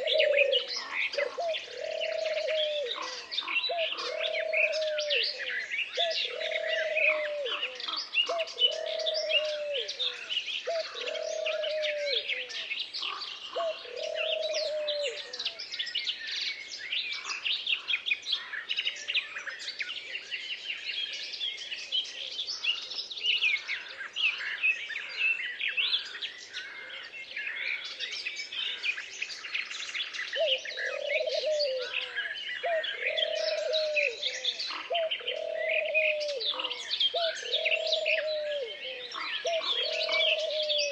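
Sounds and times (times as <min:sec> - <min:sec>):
low arching bird call: 0:00.0 - 0:15.6, 0:30.4 - 0:40.9
songbirds chirping and singing: 0:00.0 - 0:40.9.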